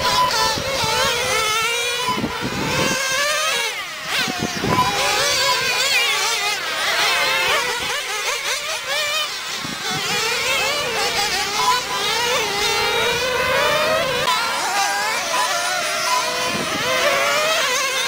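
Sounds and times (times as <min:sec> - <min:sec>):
remote control car engines racing: 0:00.0 - 0:18.0.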